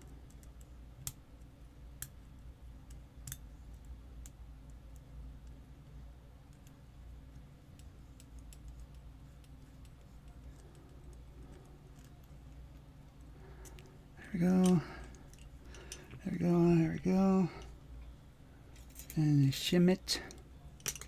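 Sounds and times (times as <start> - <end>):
steady low hum: 0.0 - 21.0
metal lock parts clicking: 20.7 - 21.0.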